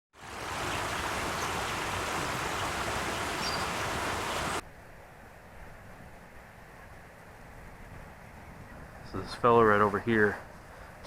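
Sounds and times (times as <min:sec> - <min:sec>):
creek water rushing: 0:00.1 - 0:04.6.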